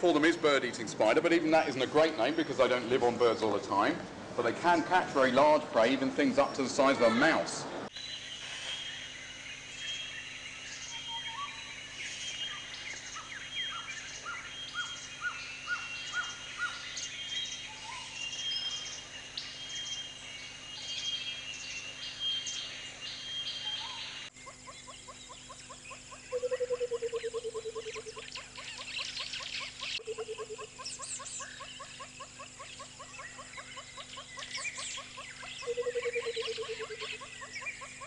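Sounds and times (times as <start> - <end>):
birds chirping and calling: 0.0 - 38.0
lower bird trill: 7.9 - 38.0.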